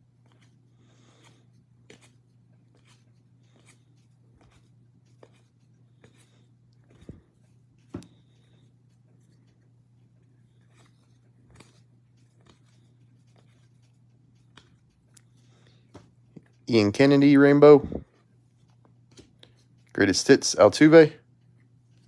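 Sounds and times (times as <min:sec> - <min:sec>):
cards clicking and sliding: 0:01.2 - 0:04.6, 0:10.6 - 0:13.7
steady low hum: 0:05.6 - 0:18.3.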